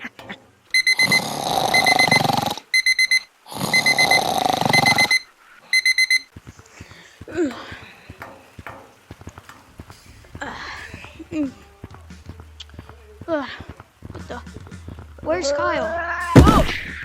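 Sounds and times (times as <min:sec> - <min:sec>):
digital alarm clock beeping: 0:00.7 - 0:06.3.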